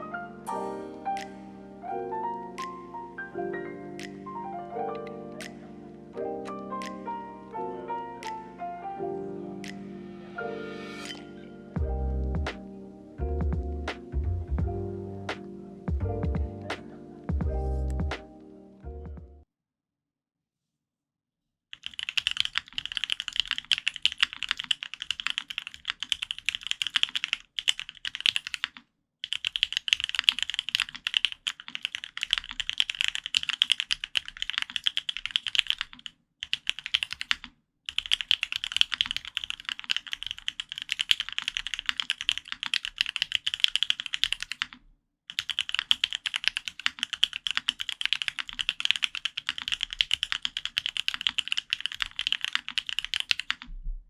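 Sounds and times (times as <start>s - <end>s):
fast mechanical keyboard typing: 21.8s - 53.7s.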